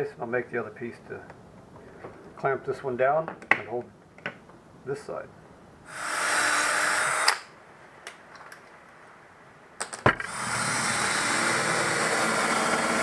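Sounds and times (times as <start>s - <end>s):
power tool motor running: 5.9s - 7.4s, 10.2s - 13.0s.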